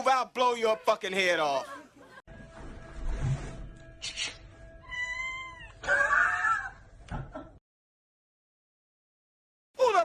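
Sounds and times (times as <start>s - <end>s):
cat crying: 4.8s - 6.8s.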